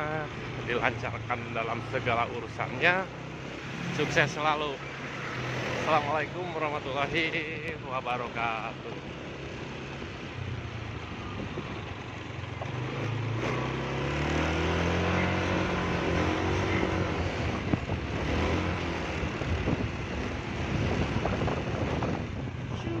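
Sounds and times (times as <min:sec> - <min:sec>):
motor scooter engine running: 0:05.4 - 0:23.0
wind noise on microphone: 0:10.2 - 0:12.0, 0:15.5 - 0:23.0.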